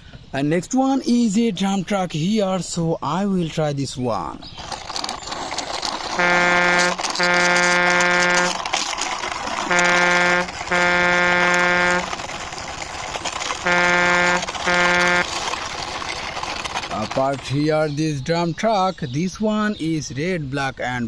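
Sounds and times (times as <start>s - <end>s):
truck horn honking: 6.1s - 8.6s, 9.6s - 12.2s, 13.6s - 15.3s.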